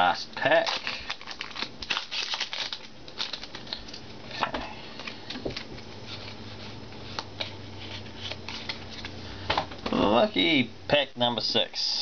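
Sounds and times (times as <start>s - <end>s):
foil wrapper crinkling and tearing: 0.4s - 4.0s
cards being handled: 7.0s - 9.2s.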